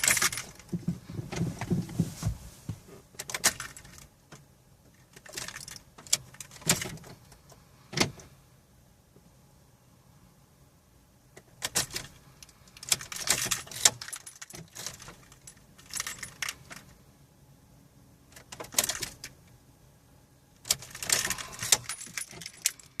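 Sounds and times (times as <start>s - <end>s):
car keys jangling: 0.0s - 1.7s, 3.2s - 7.2s, 11.4s - 16.9s, 18.4s - 19.4s, 20.6s - 23.0s.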